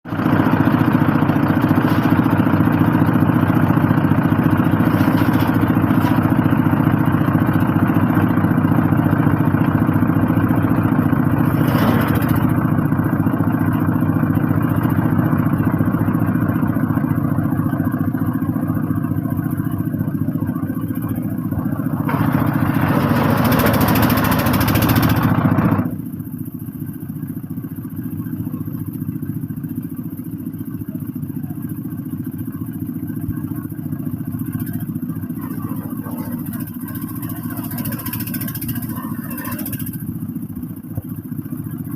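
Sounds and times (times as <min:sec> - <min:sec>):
wood chipper engine running: 0:00.1 - 0:41.9
harsh loud chipping noise: 0:22.1 - 0:25.6.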